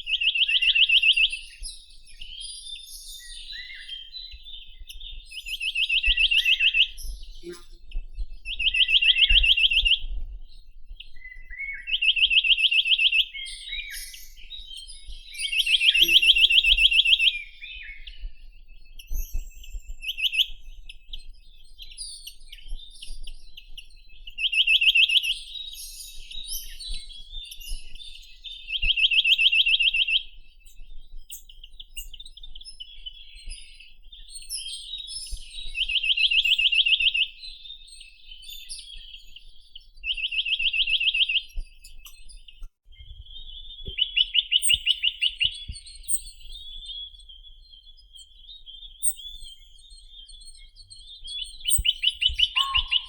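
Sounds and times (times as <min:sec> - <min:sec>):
high chirps of other birds: 0:00.0 - 0:53.0
bird singing fast trills: 0:15.4 - 0:18.0, 0:48.9 - 0:53.0.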